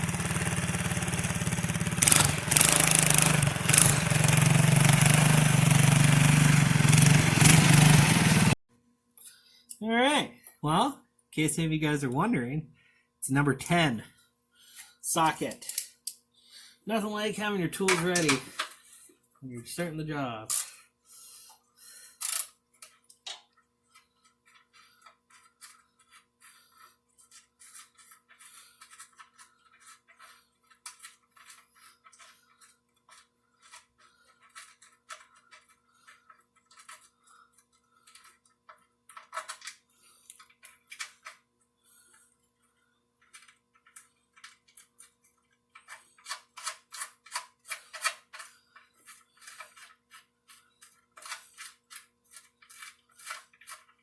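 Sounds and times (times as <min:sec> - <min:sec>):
ratchet wrench clicking: 0:22.2 - 0:22.5.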